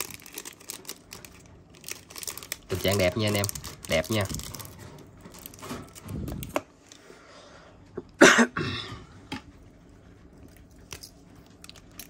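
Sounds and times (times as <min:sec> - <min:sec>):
person coughing: 0:08.2 - 0:09.1.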